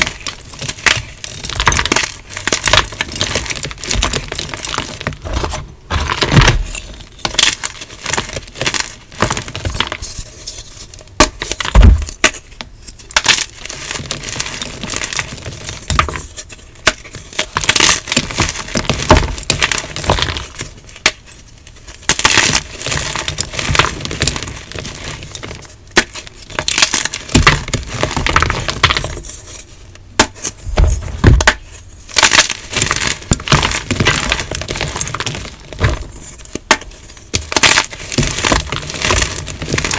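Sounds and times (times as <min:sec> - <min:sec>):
chalk crunching and cracking: 0:00.0 - 0:39.9.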